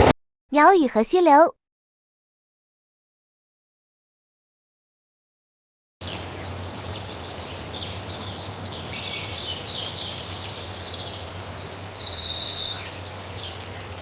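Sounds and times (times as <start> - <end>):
birds chirping: 6.0 - 14.0
stream rushing: 6.0 - 14.0.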